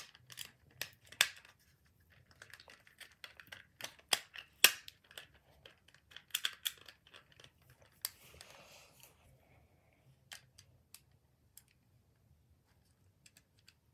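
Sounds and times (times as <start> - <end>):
plastic parts clicking: 0.0 - 8.2.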